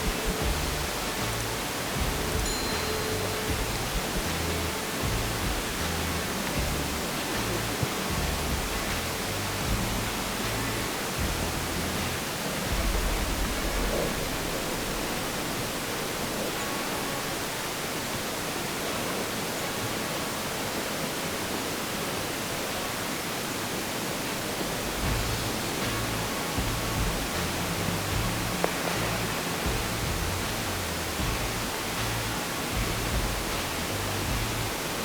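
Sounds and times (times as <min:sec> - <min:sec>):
wind gusts buffeting microphone: 0:00.0 - 0:19.2
wind hissing across microphone: 0:00.0 - 0:35.0.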